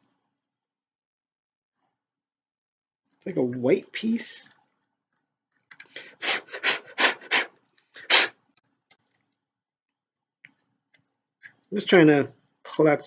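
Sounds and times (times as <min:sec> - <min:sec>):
faint clicks: 0:04.4 - 0:06.0.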